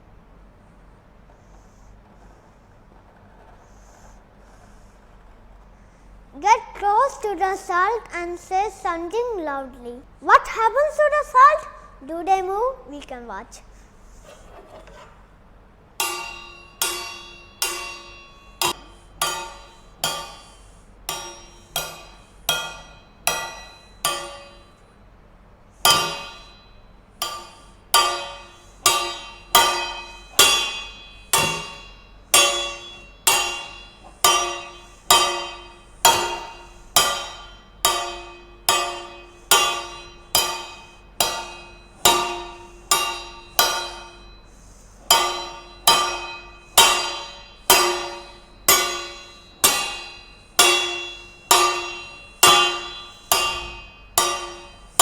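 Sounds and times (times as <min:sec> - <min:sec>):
metal noisemaker clanging: 0:16.0 - 0:25.2, 0:25.8 - 0:55.0.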